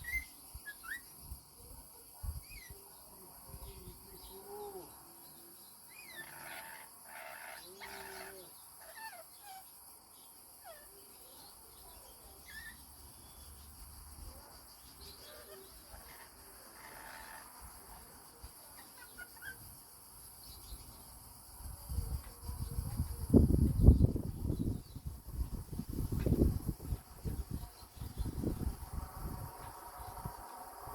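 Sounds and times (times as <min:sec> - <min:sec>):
parrots chirping: 0:05.9 - 0:09.7.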